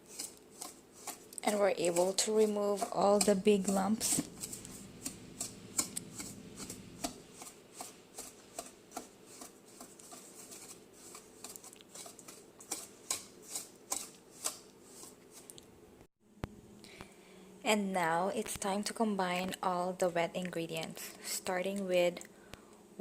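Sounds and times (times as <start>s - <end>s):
wire whisk scraping a bowl: 0.0s - 15.5s.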